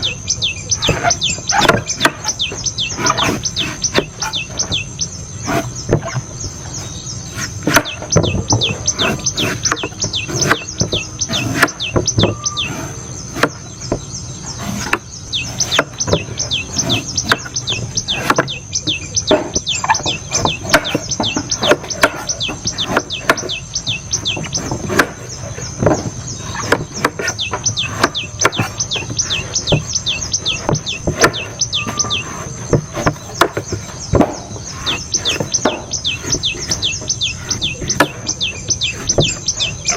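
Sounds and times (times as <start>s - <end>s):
knife chopping coconuts: 7.3s - 8.4s, 9.0s - 14.0s, 14.6s - 18.6s, 19.3s - 29.9s, 30.6s - 38.3s.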